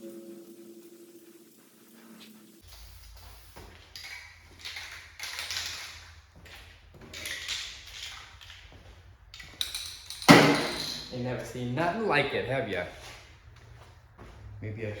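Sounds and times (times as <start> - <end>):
aerosol spray can hissing: 0.4 - 6.0.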